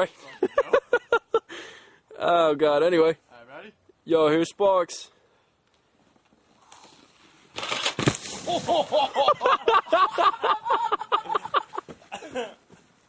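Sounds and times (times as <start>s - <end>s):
sharp thump: 7.6s - 8.7s
person laughing: 8.4s - 12.6s.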